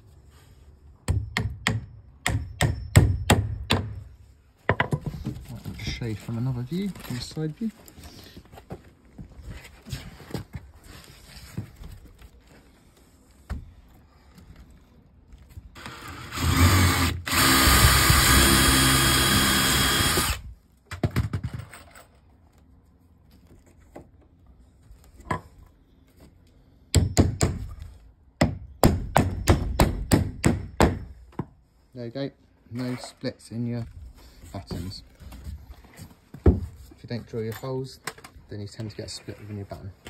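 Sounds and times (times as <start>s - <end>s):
power drill boring into wood: 15.8s - 20.5s.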